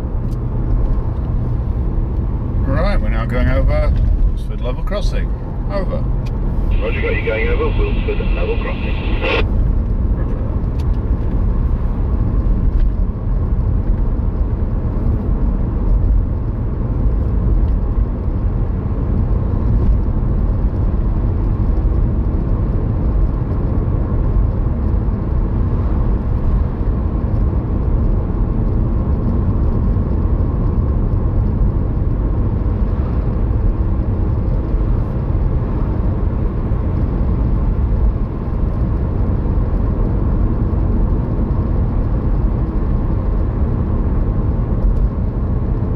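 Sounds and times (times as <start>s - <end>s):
car road and engine rumble: 0.0s - 45.9s.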